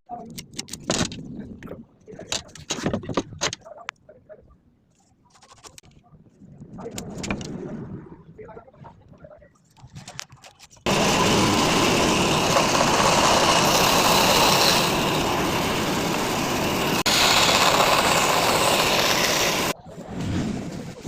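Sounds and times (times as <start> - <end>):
power tool running: 10.9 - 19.8.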